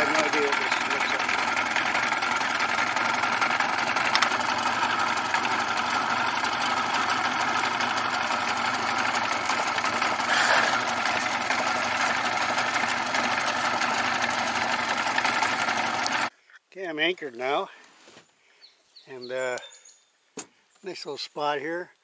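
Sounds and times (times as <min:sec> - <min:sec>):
small outboard motor running: 0:00.0 - 0:16.3.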